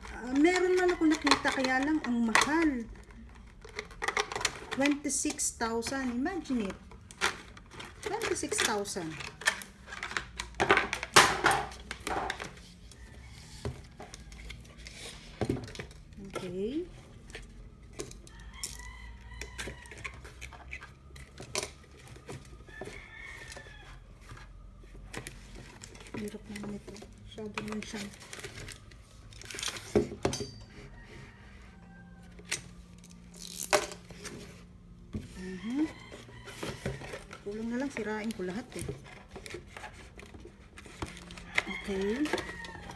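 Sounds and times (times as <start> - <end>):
knocks and rustling of packaging: 5.8 - 18.2, 19.4 - 30.7, 33.7 - 42.9.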